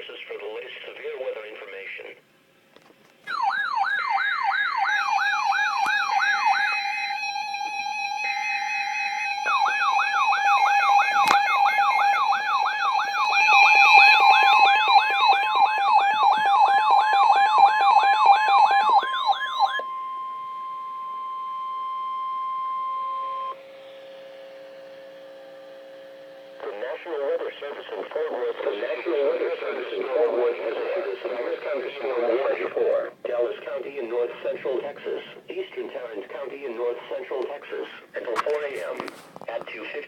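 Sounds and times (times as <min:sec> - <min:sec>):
electronic siren yelping: 0:03.3 - 0:27.4
steady alarm tones: 0:03.3 - 0:33.3.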